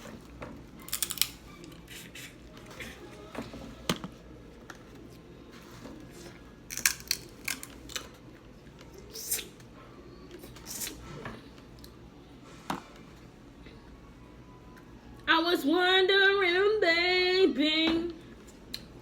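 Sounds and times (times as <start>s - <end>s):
crab shells cracking: 0.9s - 1.4s, 6.7s - 8.1s.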